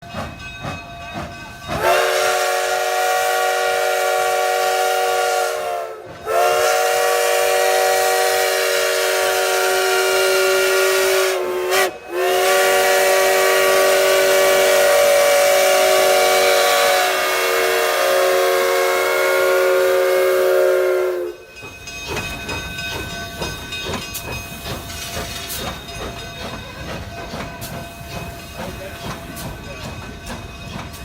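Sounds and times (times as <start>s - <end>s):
steam whistle blasts: 1.8s - 21.4s.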